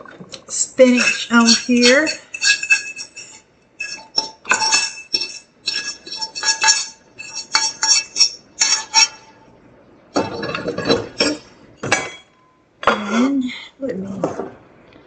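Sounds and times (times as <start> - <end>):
utensil scraping: 0.0 - 9.5
metal utensil clinking on a pan: 0.5 - 9.4, 10.1 - 12.1.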